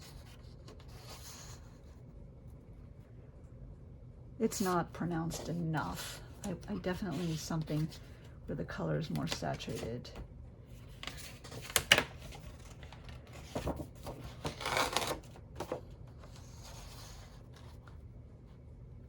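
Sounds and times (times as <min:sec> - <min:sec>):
paper sheets rustling: 0:04.5 - 0:10.2, 0:10.8 - 0:17.9.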